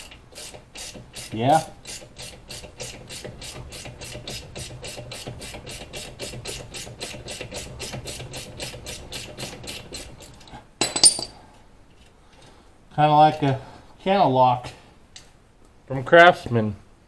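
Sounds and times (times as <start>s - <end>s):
loud metallic clink: 10.8s - 11.4s.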